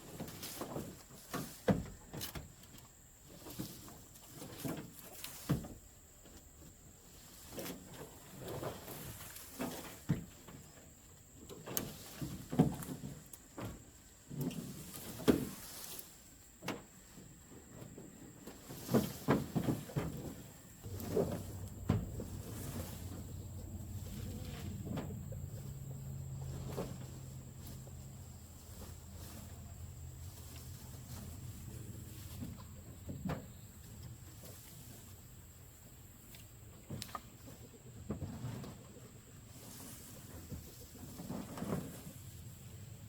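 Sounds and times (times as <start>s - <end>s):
knocks and thumps from handling: 18.8s - 23.4s.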